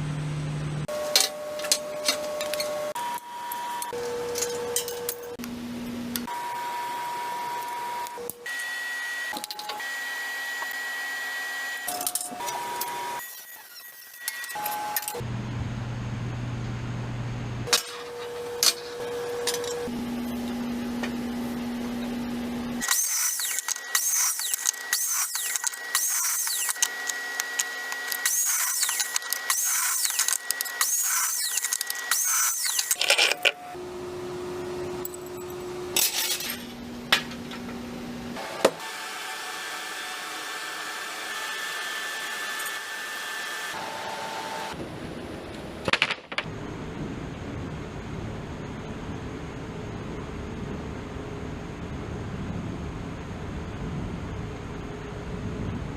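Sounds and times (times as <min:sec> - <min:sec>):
harsh high-pitched machining: 0:06.3 - 0:15.2, 0:22.8 - 0:33.8
power tool motors: 0:22.8 - 0:33.8, 0:38.4 - 0:44.8.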